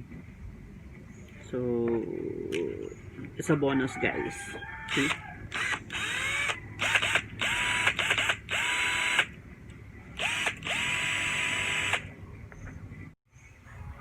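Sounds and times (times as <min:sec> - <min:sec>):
cordless drill whining: 0:04.9 - 0:09.3, 0:10.2 - 0:12.1.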